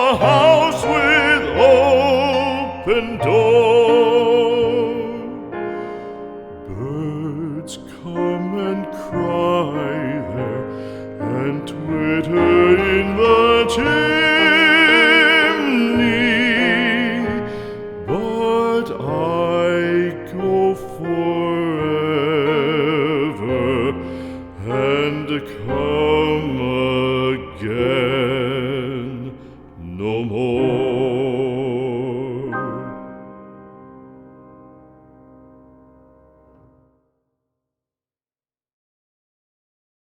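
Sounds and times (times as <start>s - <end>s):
trained voice singing: 0.0s - 5.6s, 6.6s - 33.0s
piano accompaniment: 0.0s - 37.0s.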